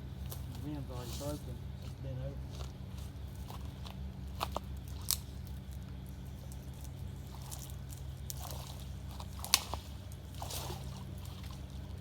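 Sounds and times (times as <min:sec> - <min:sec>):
steady low hum: 0:00.0 - 0:12.0
twigs and brush breaking: 0:02.5 - 0:12.0.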